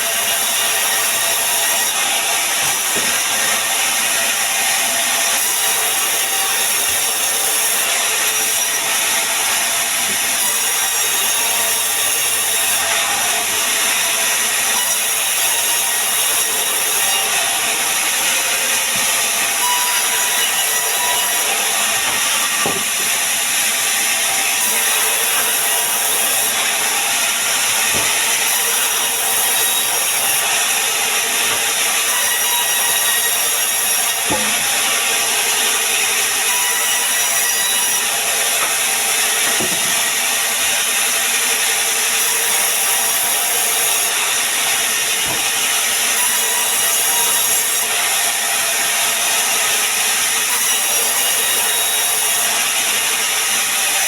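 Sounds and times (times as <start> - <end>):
sawmill saw cutting wood: 0.0 - 54.0.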